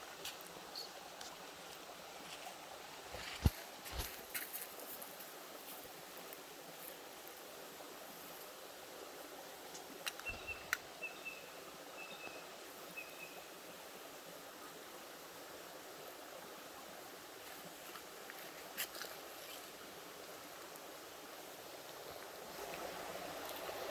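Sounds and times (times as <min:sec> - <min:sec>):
creek water flowing: 0:00.0 - 0:23.9.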